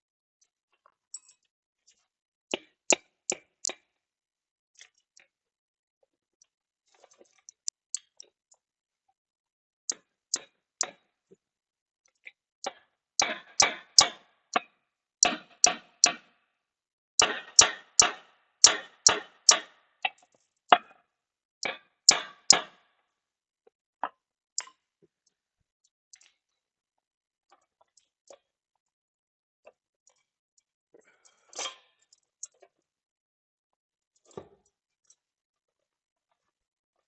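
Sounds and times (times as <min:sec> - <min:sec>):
hammer striking metal: 0:13.2 - 0:14.2, 0:15.2 - 0:16.3, 0:17.2 - 0:19.8, 0:22.1 - 0:22.8.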